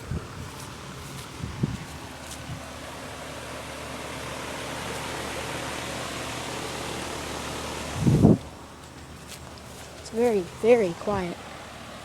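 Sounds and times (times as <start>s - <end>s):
air conditioner condenser running: 0.0s - 12.0s.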